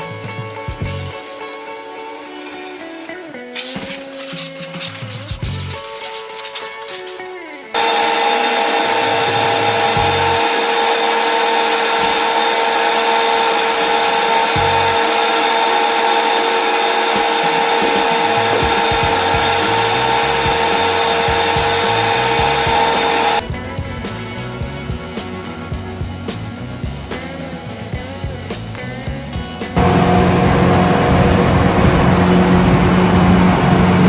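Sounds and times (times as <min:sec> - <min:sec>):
power tool motor whine: 0:05.8 - 0:23.4, 0:29.8 - 0:34.0
background music: 0:17.8 - 0:33.4.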